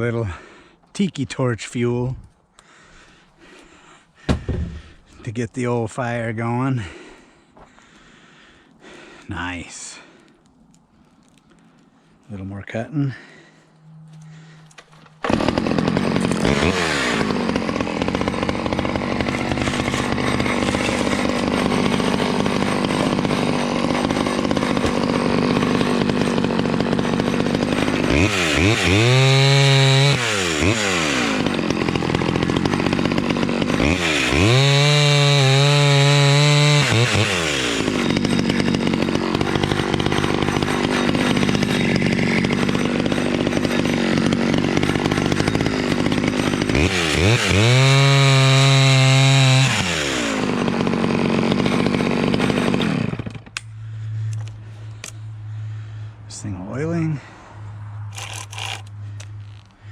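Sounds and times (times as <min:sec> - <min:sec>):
chainsaw cutting wood: 0:02.6 - 0:05.2, 0:14.2 - 0:56.0, 0:58.1 - 0:59.9.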